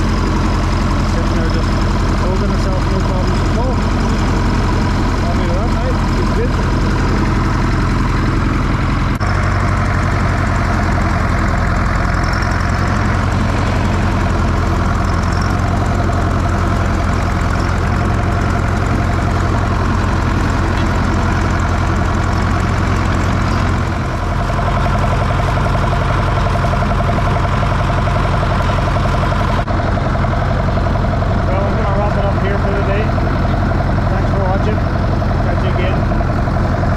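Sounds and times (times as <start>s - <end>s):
tractor diesel engine idling: 0.0s - 36.9s.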